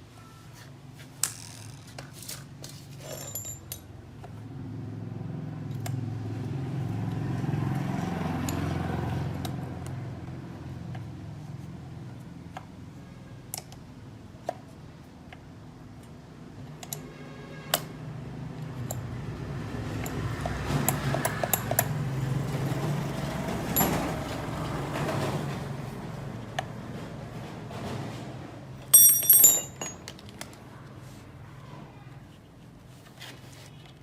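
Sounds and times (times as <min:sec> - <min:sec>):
metal tools clinking: 0:02.9 - 0:03.9, 0:23.8 - 0:24.2, 0:28.8 - 0:30.3.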